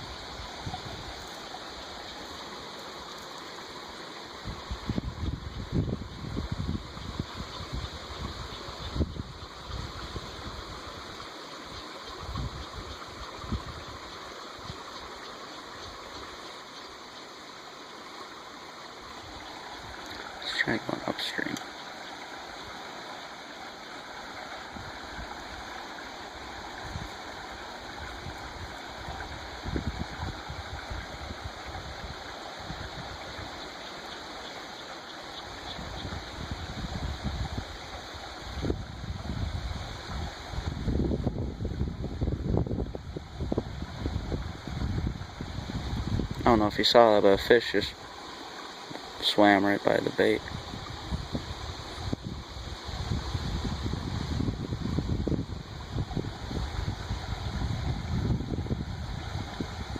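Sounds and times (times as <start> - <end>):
creek water babbling: 0.0 - 59.9.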